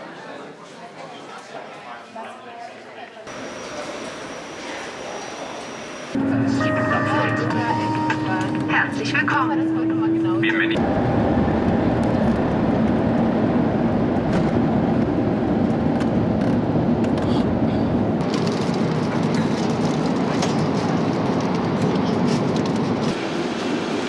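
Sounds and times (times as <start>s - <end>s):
airliner cabin rush: 7.2s - 24.0s.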